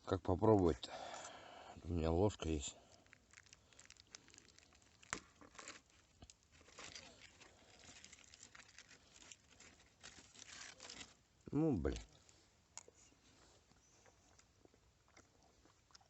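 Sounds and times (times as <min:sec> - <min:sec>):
aluminium foil crinkling: 0:02.3 - 0:12.4.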